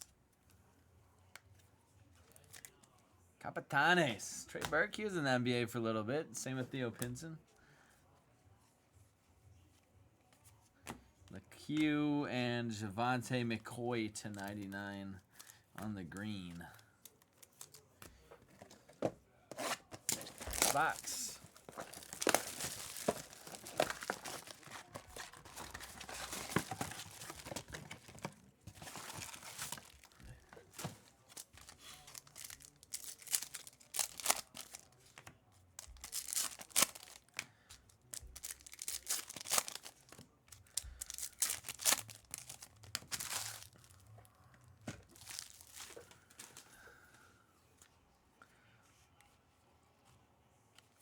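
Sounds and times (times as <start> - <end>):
card pack wrappers tearing: 19.5 - 35.2, 35.8 - 44.1, 45.0 - 46.6.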